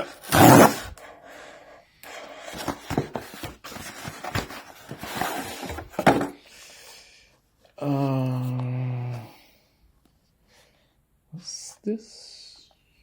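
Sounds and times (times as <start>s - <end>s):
packaging rustling and clicking: 2.4s - 6.4s.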